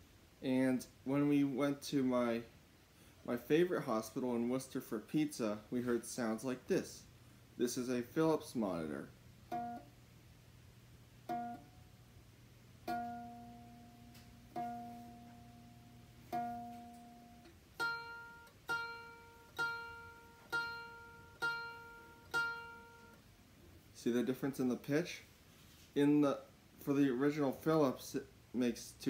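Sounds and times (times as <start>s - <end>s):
plucked ukulele notes: 9.5s - 9.9s, 11.2s - 11.8s, 12.8s - 23.2s.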